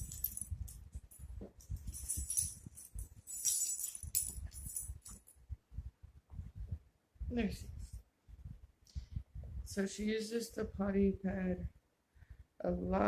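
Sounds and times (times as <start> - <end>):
rustling of handling: 0.0 - 5.4
small metal jingling: 0.0 - 5.4.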